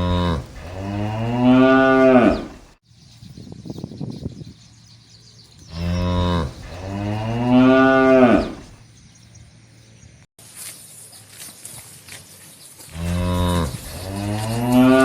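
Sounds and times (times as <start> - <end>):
cattle mooing: 0.0 - 2.7, 5.7 - 8.7, 12.9 - 15.0.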